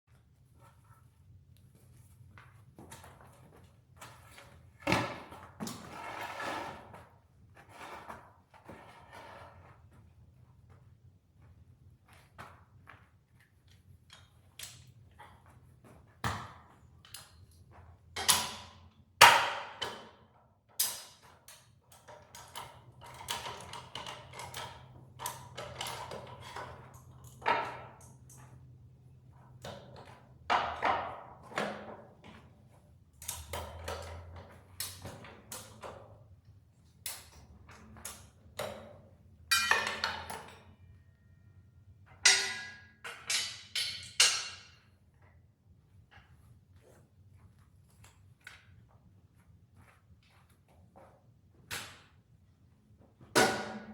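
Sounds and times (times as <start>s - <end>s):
metal clanks and knocks: 39.5s - 40.8s, 42.1s - 44.8s.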